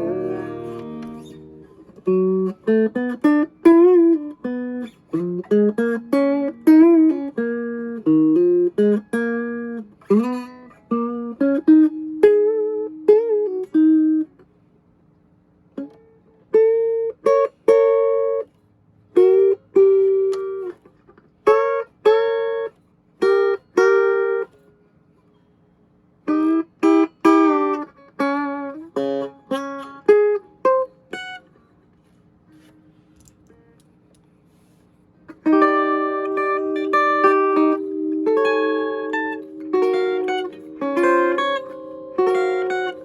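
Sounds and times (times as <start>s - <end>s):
clean electric guitar playing: 0.0s - 14.3s, 19.2s - 20.8s, 21.4s - 24.6s, 26.3s - 31.5s, 35.3s - 43.0s.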